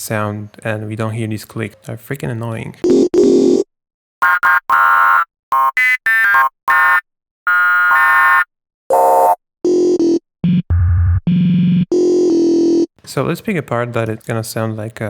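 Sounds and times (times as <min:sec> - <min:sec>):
buzzy synth notes and chords: 0:10.4 - 0:11.7.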